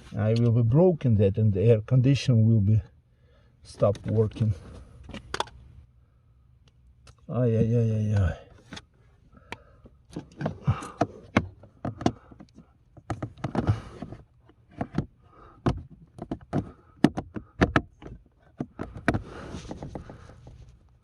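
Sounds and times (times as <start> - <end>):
plastic clicks and knocks: 9.5 - 19.2.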